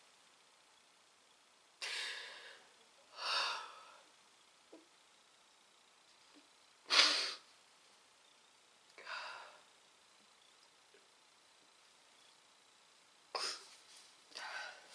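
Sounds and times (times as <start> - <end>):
woman breathing audibly: 14.3 - 14.9.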